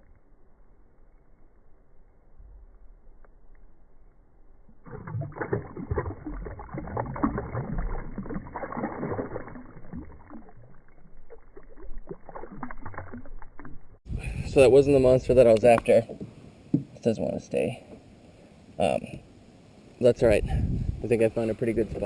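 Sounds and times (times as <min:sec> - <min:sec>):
deep muffled water splashing: 0:04.7 - 0:16.4.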